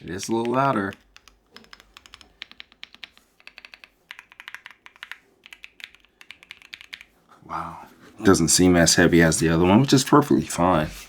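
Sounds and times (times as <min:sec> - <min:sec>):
mechanical keyboard key clicks: 0:00.0 - 0:07.1.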